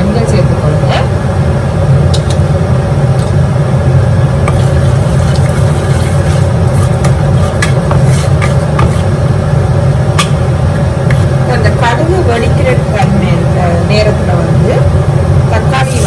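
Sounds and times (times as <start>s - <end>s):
seeds crackling in hot oil: 4.2s - 11.7s.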